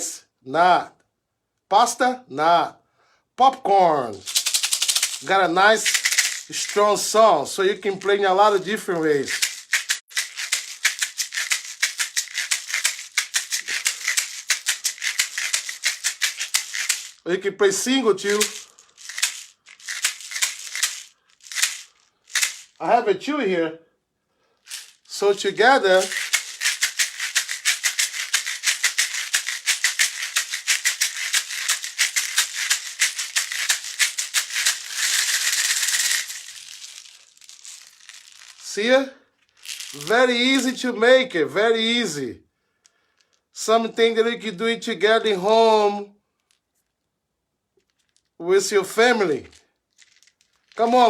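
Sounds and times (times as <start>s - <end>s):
homemade shaker rattling: 4.0s - 22.9s, 24.4s - 38.8s, 39.4s - 40.8s, 47.8s - 51.0s.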